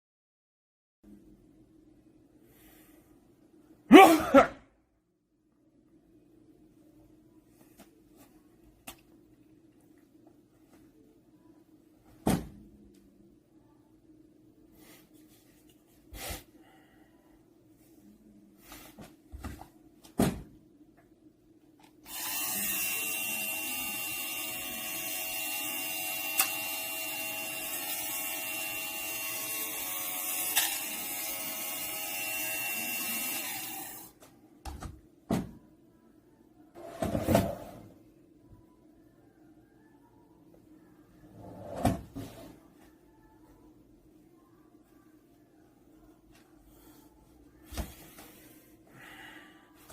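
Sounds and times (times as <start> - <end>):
small electric motor running: 22.1 - 34.1.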